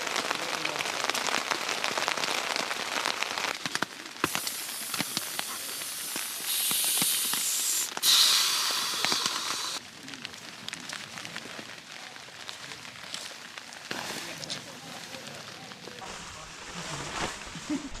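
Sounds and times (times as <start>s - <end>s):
light ticks and crackles: 2.9s - 8.1s, 8.9s - 16.1s
steady hiss: 4.2s - 9.8s.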